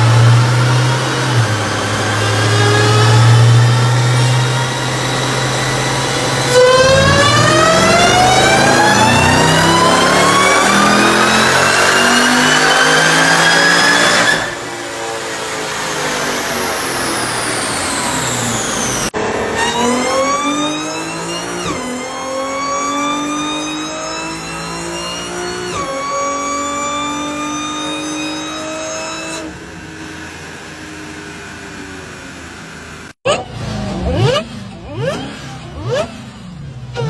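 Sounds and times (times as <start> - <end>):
car accelerating hard: 0.0 - 37.0
supercharger whine: 0.0 - 37.0.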